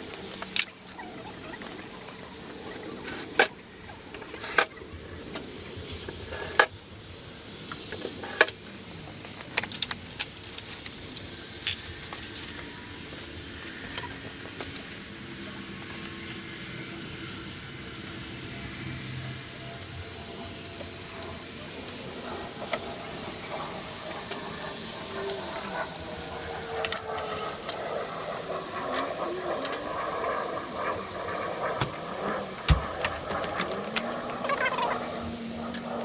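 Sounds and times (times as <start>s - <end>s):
hard objects clicking and knocking: 31.8s - 34.1s.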